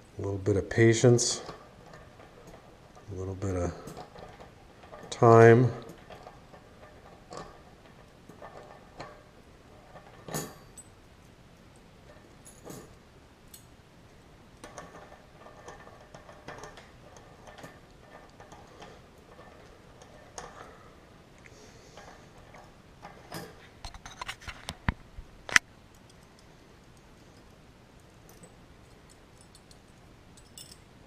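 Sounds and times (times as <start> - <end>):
metal bike cogs clicking: 0.6 - 13.8, 28.3 - 30.8.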